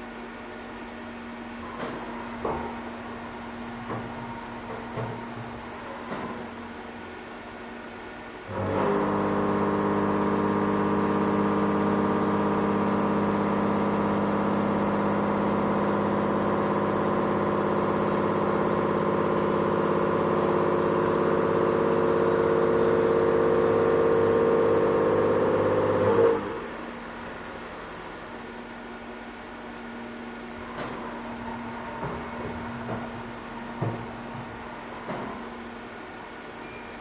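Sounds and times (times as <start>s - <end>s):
milling cutter whine: 8.5s - 28.7s.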